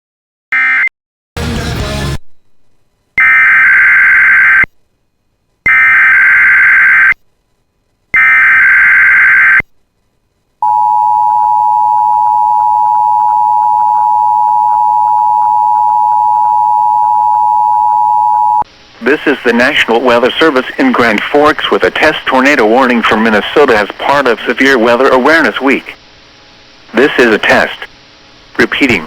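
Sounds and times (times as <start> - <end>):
steady attention tone: 10.6 - 25.8.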